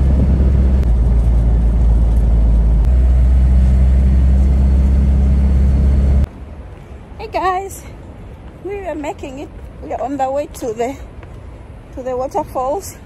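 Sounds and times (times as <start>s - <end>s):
vehicle driving rumble: 0.0s - 7.2s.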